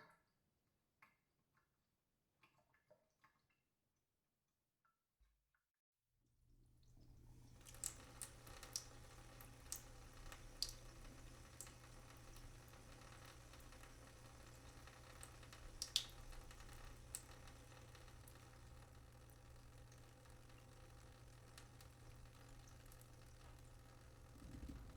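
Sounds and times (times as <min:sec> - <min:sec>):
low steady hum: 0:06.8 - 0:24.9
water dripping: 0:06.8 - 0:24.9.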